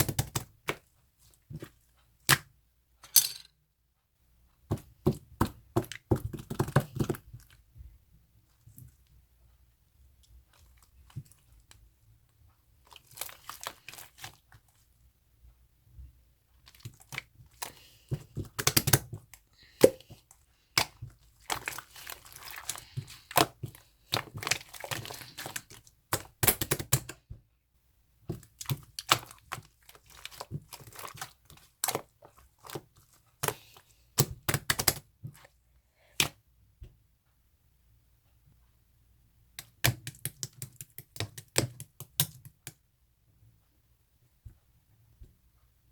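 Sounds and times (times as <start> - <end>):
slime squished by hand: 16.7 - 27.2, 28.3 - 35.5.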